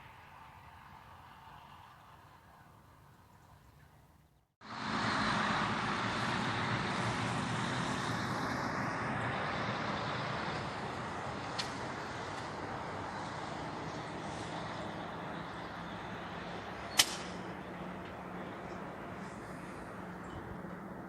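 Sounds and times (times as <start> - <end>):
loud wash of noise: 4.6 - 15.0
engine running: 4.6 - 21.0
sharp click: 16.9 - 17.4.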